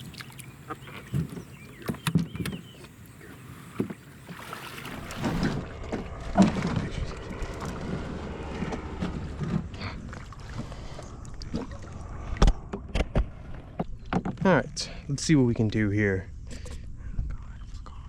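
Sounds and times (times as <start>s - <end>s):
kayak gear knocking and rustling: 0.0s - 3.0s, 12.5s - 14.5s.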